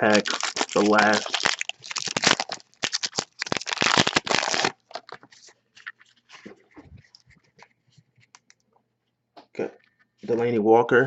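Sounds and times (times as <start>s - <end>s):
foil wrapper tearing and crinkling: 0.0s - 6.0s
cards rustling and clicking: 0.0s - 8.6s.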